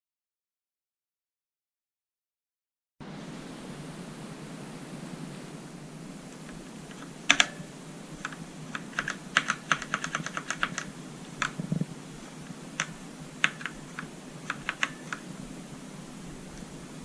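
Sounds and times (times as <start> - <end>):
steady low hiss: 3.0 - 17.0
mechanical keyboard typing: 6.9 - 15.3.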